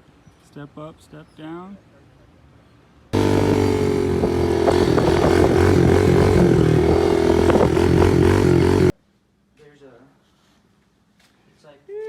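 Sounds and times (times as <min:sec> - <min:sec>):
dirt bike engine running: 0:03.2 - 0:08.9.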